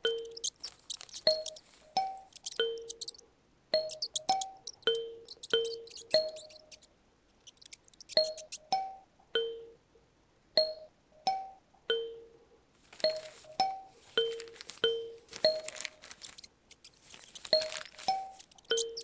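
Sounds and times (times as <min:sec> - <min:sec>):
soft rustling: 0:00.0 - 0:03.2, 0:03.9 - 0:08.6, 0:12.8 - 0:19.0.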